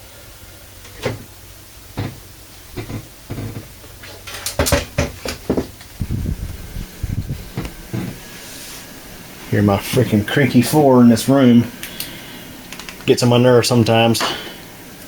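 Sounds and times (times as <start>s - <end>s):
floor creaking under footsteps: 2.0s - 6.6s, 7.2s - 8.3s.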